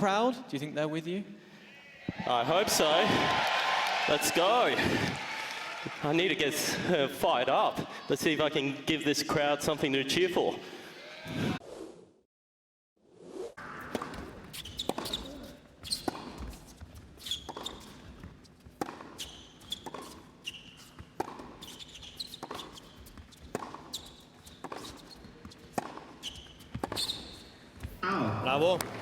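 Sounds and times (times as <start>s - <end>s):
racket striking ball: 13.7s - 16.6s, 18.8s - 24.0s, 24.6s - 27.4s
ball bouncing: 13.8s - 20.1s, 20.9s - 27.2s
shoe squeaks on court: 13.8s - 27.9s.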